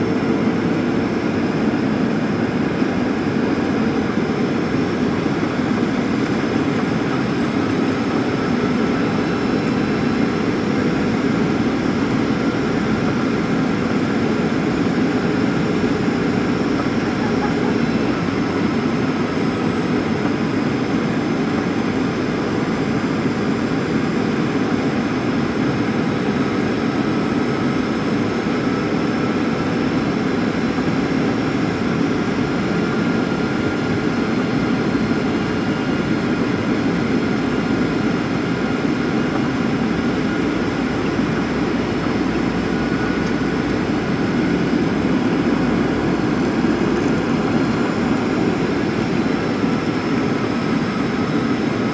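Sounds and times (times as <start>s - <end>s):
jet engine and airflow roar: 0.0s - 51.9s
faint whining tones: 38.9s - 51.6s.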